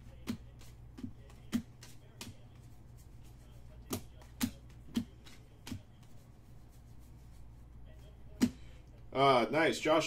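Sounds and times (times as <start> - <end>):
steady low hum: 0.0 - 10.0
trading cards snapping: 0.2 - 2.4, 3.8 - 5.9.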